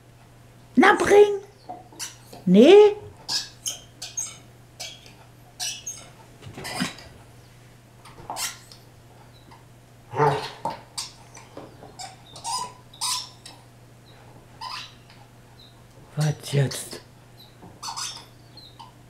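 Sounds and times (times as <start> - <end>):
squeaky ball squeaks: 3.3 - 5.0, 5.6 - 7.0, 11.9 - 13.4, 17.8 - 18.8
dog chewing rubber ball: 10.2 - 13.6.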